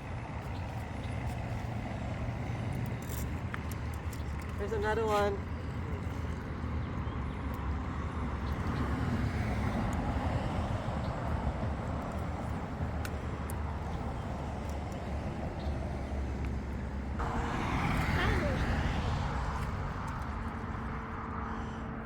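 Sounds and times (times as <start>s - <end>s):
outdoor rushing noise: 9.2s - 22.0s.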